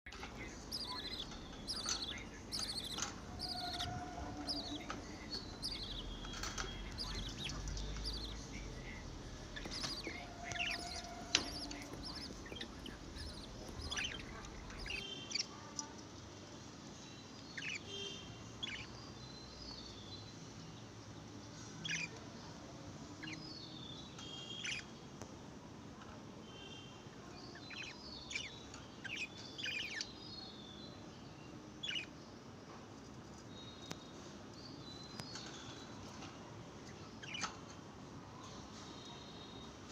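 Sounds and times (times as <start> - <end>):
baby budgerigars chirping: 0.1 - 16.0, 17.3 - 20.3, 21.8 - 22.3, 23.2 - 25.0, 27.0 - 31.1, 31.8 - 32.2, 33.3 - 36.2, 36.8 - 37.7.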